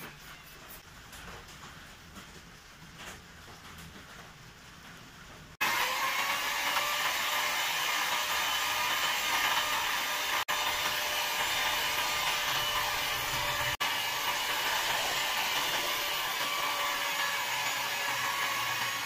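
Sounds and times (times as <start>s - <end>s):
electric mixer motor whining: 5.6s - 19.0s.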